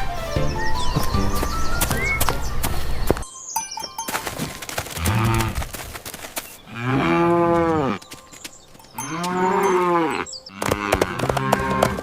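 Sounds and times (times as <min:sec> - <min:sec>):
cow mooing: 0:06.7 - 0:08.0, 0:09.0 - 0:12.0.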